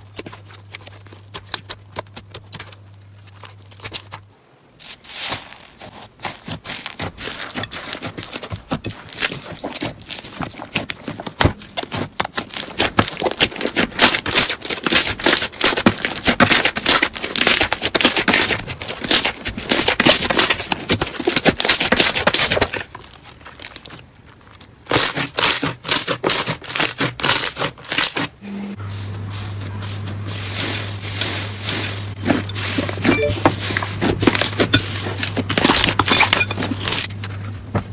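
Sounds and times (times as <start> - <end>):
crunchy slime crackling: 0.0 - 28.4.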